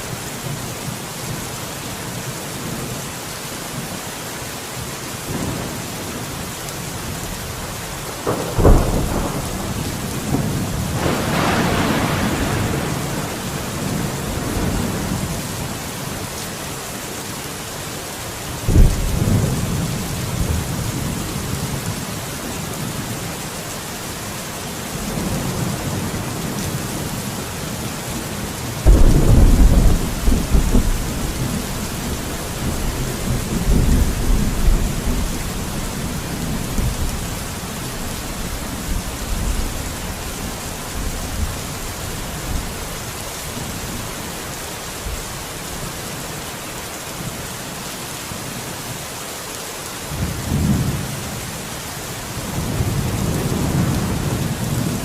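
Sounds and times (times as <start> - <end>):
heavy rain hissing: 0.0 - 55.0
faint thunder rumbles: 5.3 - 16.4, 18.6 - 23.4, 24.9 - 44.1, 52.3 - 55.0
thunderclap rolling into rumble: 8.2 - 15.2, 28.8 - 37.4.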